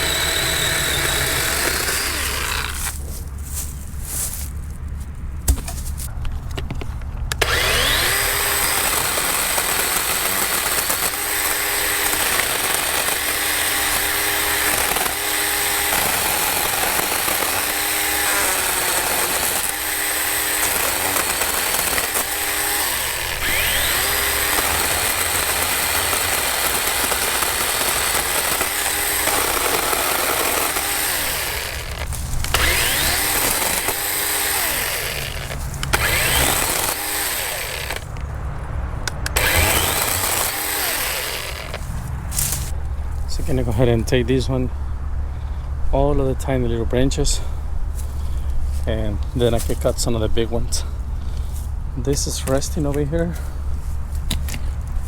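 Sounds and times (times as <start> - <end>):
chainsaw cutting wood: 0.0 - 3.1, 7.3 - 38.2, 39.1 - 42.7.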